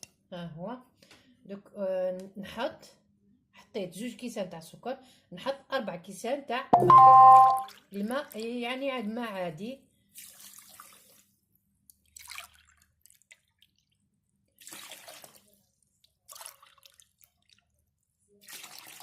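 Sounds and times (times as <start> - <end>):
water pouring into pot: 10.2 - 11.3, 12.0 - 14.0, 14.6 - 15.5, 16.3 - 17.7, 18.4 - 19.0.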